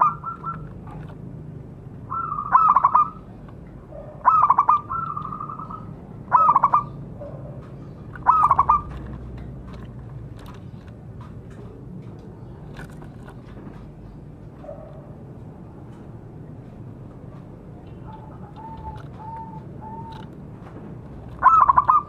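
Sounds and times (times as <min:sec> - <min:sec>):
dove trilled cooing: 0:00.0 - 0:01.0, 0:02.0 - 0:03.3, 0:03.9 - 0:09.3, 0:17.9 - 0:20.3, 0:21.3 - 0:22.0.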